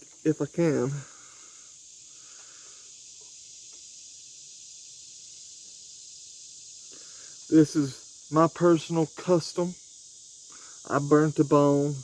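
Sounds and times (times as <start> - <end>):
insects chirring: 0.0 - 12.0.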